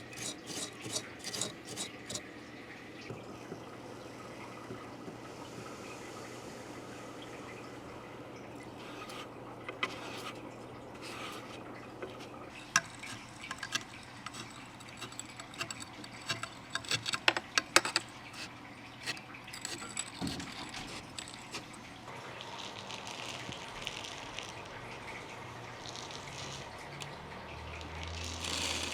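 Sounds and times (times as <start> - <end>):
small hard objects clinking: 28.1 - 28.9.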